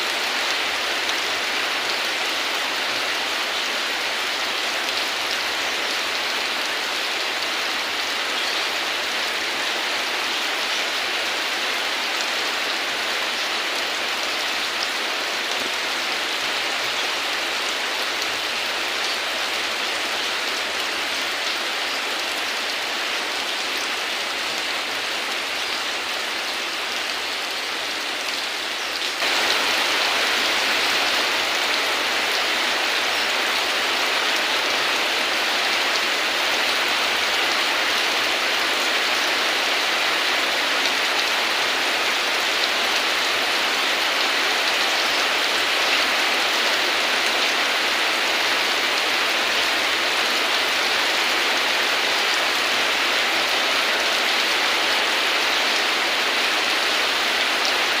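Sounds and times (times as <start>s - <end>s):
steady rain hiss: 0.0s - 58.0s.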